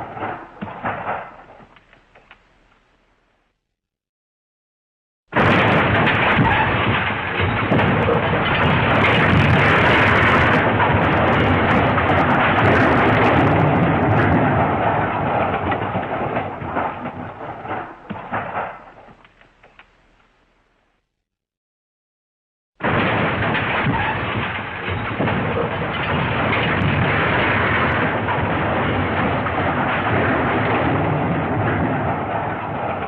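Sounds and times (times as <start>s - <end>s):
loud crashing smash: 5.3s - 19.0s, 22.8s - 33.0s.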